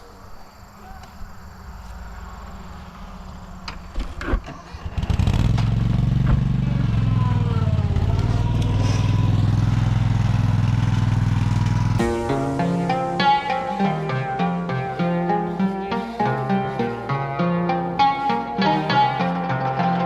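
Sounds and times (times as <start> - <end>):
engine starting and idling: 2.1 - 12.0.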